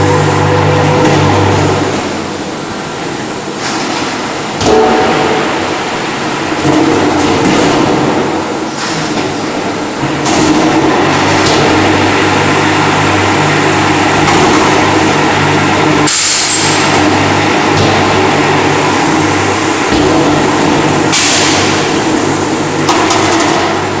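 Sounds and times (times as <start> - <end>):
paint sprayer humming: 0.0 - 2.1, 11.6 - 22.9.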